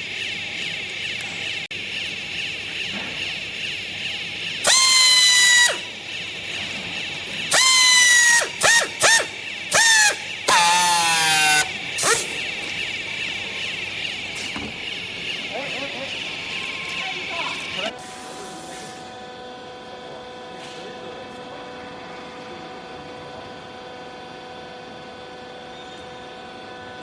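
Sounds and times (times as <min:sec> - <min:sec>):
steady machine hum: 0:00.0 - 0:17.9
loud horn honks: 0:07.5 - 0:12.3.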